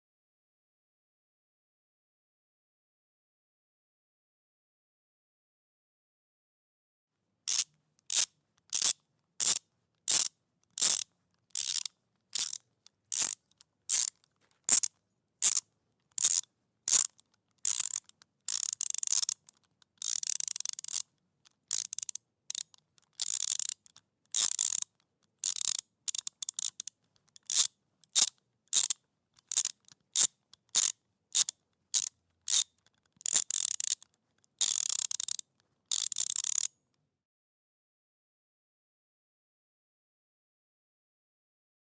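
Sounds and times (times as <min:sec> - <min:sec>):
socket wrench ratcheting: 0:07.5 - 0:36.7.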